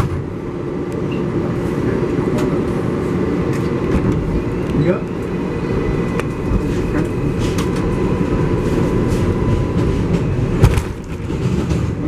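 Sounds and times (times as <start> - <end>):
train wheels rumbling on rail: 0.0 - 12.0.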